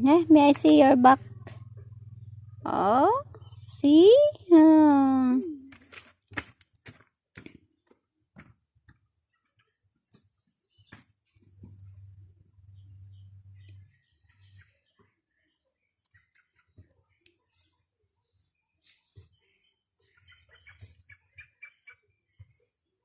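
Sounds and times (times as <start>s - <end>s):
low hum: 0.0s - 5.8s
pet bird chirping: 0.1s - 4.3s, 10.6s - 22.8s
faint clicks and taps: 16.0s - 17.4s.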